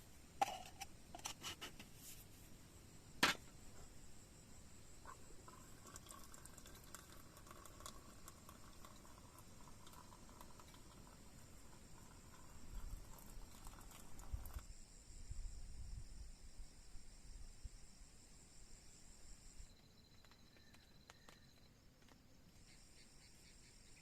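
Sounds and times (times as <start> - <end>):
camp gear clicking and knocking: 3.2 - 3.5.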